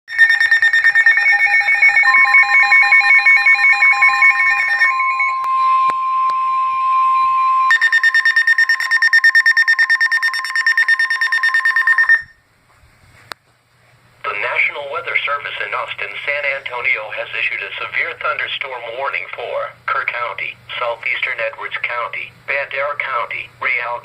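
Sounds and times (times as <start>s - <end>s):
rapid electronic alarm beeping: 0.1s - 12.4s
steady warning tone: 0.1s - 12.4s
chirping data bursts: 7.7s - 12.3s.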